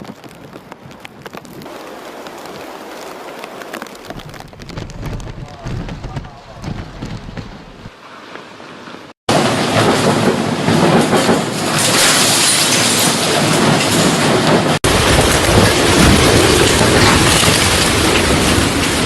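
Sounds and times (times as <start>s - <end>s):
wind buffeting microphone: 0.0s - 7.9s, 14.8s - 19.0s
storm wind and heavy rain: 0.0s - 19.0s.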